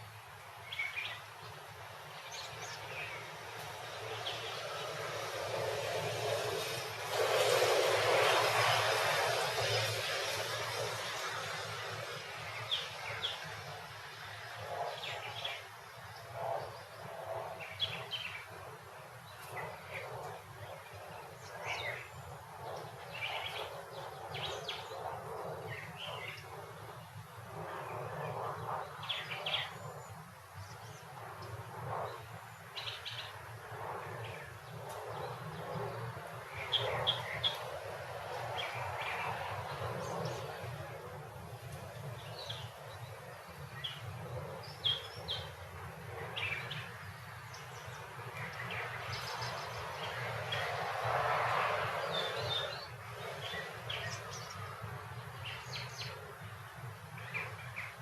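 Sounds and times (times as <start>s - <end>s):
songbirds chirping: 19.3s - 50.9s, 51.5s - 58.0s
vehicle passing: 49.8s - 52.8s.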